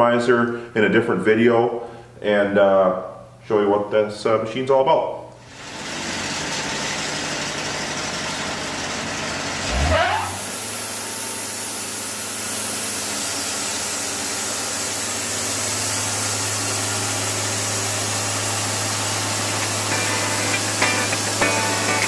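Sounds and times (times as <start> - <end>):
bandsaw mill cutting log: 5.5 - 22.0
music: 19.4 - 22.0.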